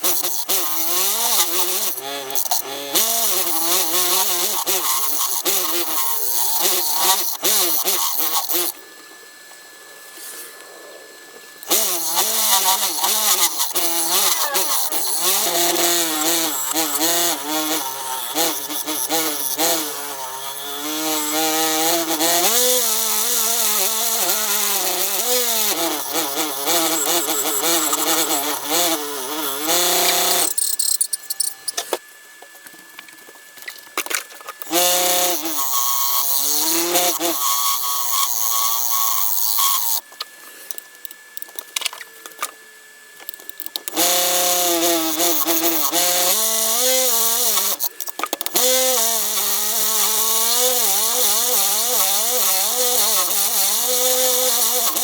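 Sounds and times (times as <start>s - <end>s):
faint motor whine: 0.0s - 55.0s
lathe tool cutting wood with squeal: 12.1s - 21.9s.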